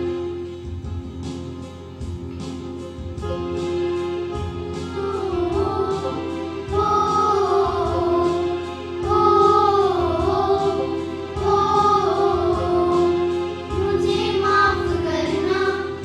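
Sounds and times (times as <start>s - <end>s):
instrumental accompaniment with beat: 0.0s - 16.0s
children singing devotional song: 4.9s - 16.0s.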